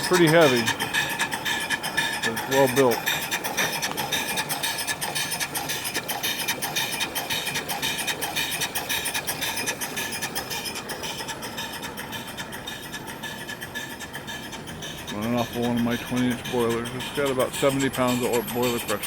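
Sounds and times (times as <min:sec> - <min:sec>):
steam pump clattering: 0:00.0 - 0:19.0.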